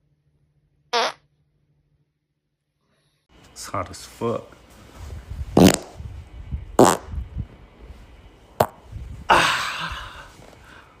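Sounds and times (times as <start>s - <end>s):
farts: 1.0s - 1.2s, 5.6s - 6.0s, 6.8s - 7.1s.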